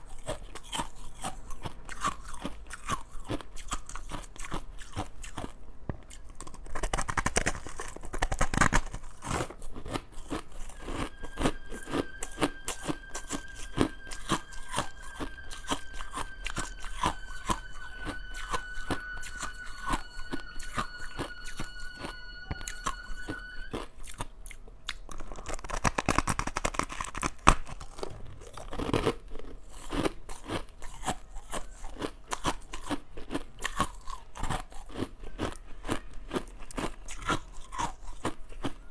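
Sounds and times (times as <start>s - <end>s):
crushed ice being chewed: 0.0s - 38.9s
steady high tone: 10.2s - 24.2s.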